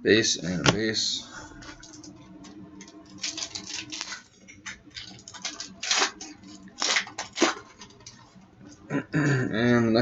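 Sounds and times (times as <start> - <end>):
cards and wrapper rustling: 2.9 - 8.4.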